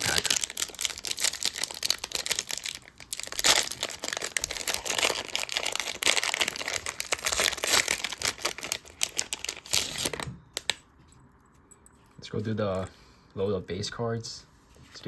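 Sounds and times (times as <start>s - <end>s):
plastic wrapper crinkling: 0.0s - 10.8s.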